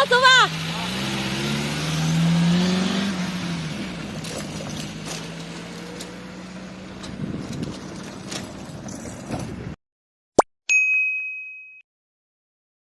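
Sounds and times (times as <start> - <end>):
vehicle pulling away: 0.0 - 9.8.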